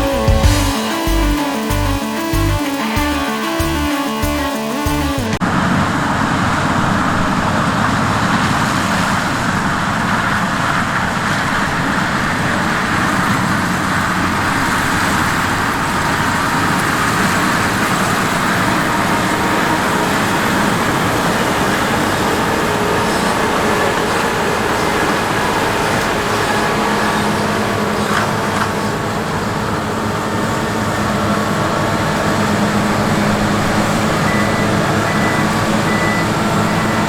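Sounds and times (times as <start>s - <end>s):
low engine drone: 0.0s - 5.4s.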